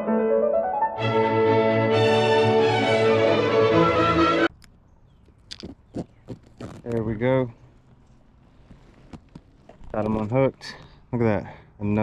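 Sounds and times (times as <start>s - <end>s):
orchestral brass chords: 0.0s - 4.5s.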